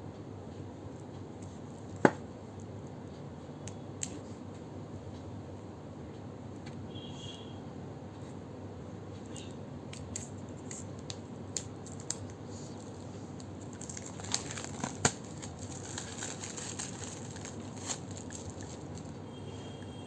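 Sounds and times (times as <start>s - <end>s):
plastic wrapping crinkling and tearing: 10.7s - 19.2s.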